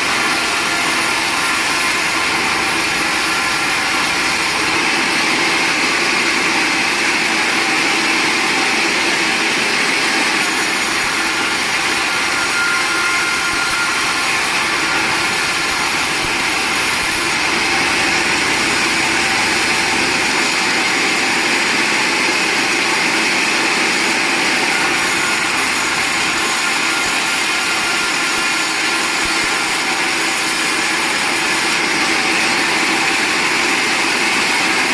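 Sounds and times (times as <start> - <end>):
sawmill machinery running: 0.0 - 34.9.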